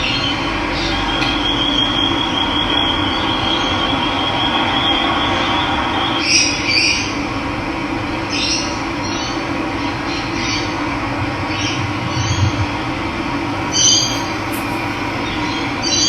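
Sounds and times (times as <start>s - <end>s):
running water rushing: 13.6s - 15.8s
thin high tone: 13.6s - 15.9s
bird giving harsh calls: 13.7s - 15.7s.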